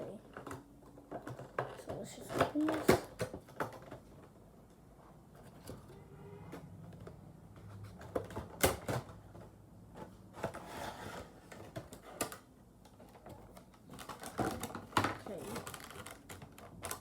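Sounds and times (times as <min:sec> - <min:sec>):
packaging rustling: 0:10.4 - 0:17.0
packaging clicks and snaps: 0:11.5 - 0:17.0.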